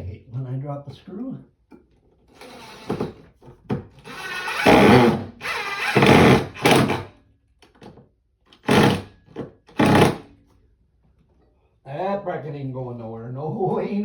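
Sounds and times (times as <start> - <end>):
power drill driving screws: 2.3 - 3.2, 4.0 - 7.1, 8.6 - 9.1, 9.7 - 10.3.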